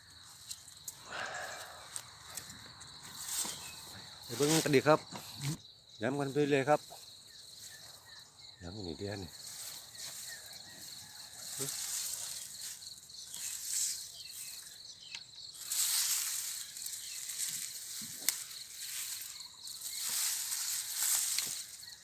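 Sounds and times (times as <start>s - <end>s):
insects chirring: 0.0s - 22.0s
rustling noise: 3.0s - 5.5s, 9.2s - 14.8s, 15.6s - 22.0s.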